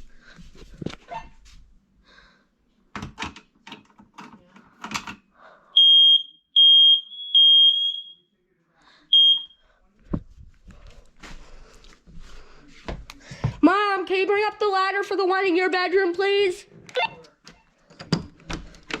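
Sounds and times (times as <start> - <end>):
smoke alarm beeping: 5.8 - 8.3, 9.1 - 9.6.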